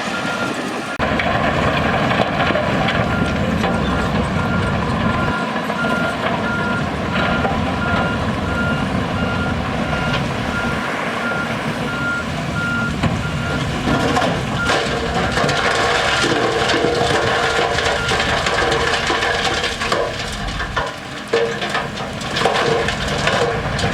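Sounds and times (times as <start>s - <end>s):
diesel engine running: 0.0s - 23.9s
back-up alarm beeping: 0.1s - 1.0s, 3.0s - 15.4s
machine clattering and scraping: 1.0s - 9.0s, 13.0s - 23.9s.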